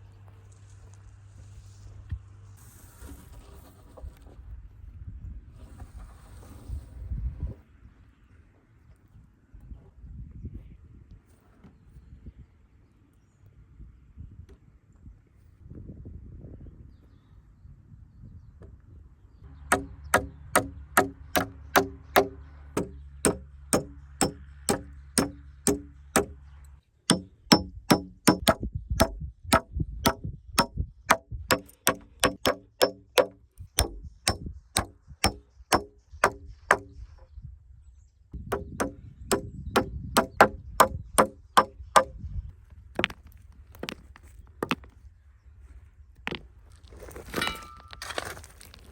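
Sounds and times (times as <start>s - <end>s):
hammer striking metal: 19.7s - 26.4s, 27.1s - 36.9s, 38.6s - 42.1s.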